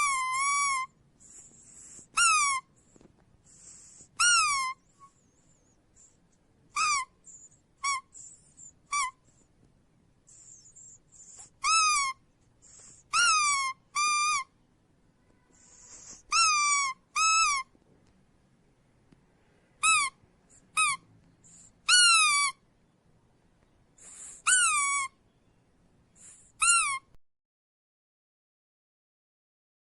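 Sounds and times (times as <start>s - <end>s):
squeaky dog toy squeaks: 0.0s - 1.0s, 1.9s - 2.8s, 4.0s - 5.2s, 6.6s - 9.4s, 10.4s - 14.6s, 15.6s - 17.8s, 19.8s - 22.6s, 24.0s - 25.2s, 26.2s - 27.2s
soft hissing: 15.4s - 16.3s.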